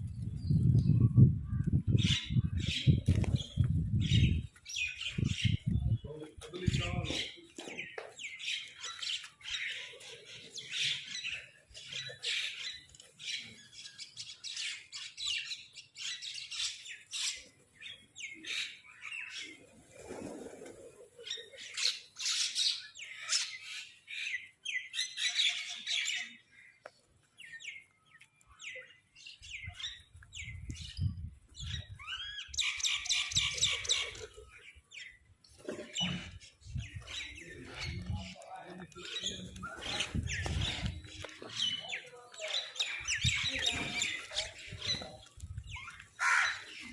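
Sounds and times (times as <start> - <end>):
crows and mynahs calling: 45.9 - 46.9.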